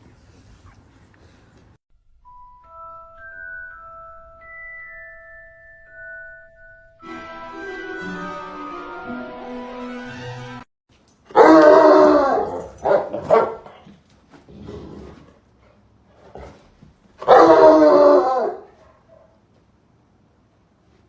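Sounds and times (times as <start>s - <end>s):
dog growling barks: 11.3s - 13.9s, 17.2s - 19.2s.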